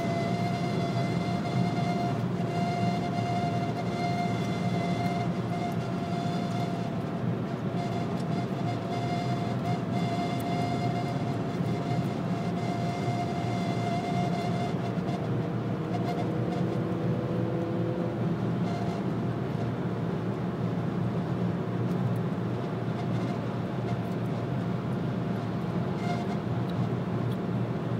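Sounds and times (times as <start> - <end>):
thin high squeak from dashboard: 0.0 - 7.0, 7.7 - 19.7, 22.9 - 24.1, 25.9 - 26.9
road and wind noise in car cabin: 0.0 - 27.9.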